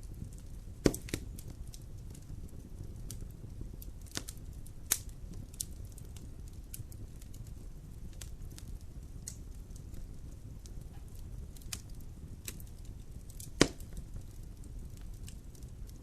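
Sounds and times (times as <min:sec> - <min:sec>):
fire rumbling and crackling: 0:00.0 - 0:16.0
loud sharp pop of fire: 0:00.3 - 0:07.0, 0:10.6 - 0:15.1.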